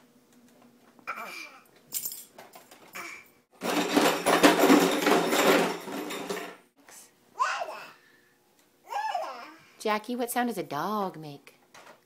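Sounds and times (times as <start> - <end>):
rattling clatter of hard objects: 3.6 - 6.7.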